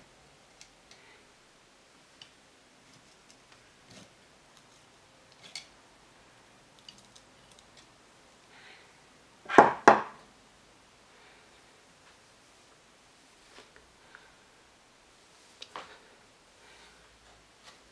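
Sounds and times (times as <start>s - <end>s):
metal parts clicking and tapping: 6.8s - 7.9s.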